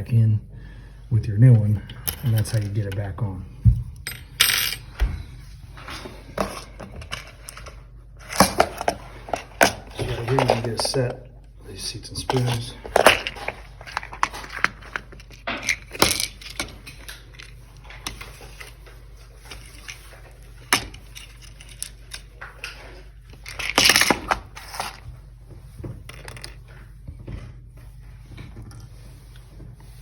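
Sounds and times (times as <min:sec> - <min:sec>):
metal parts clattering: 0:12.3 - 0:17.5.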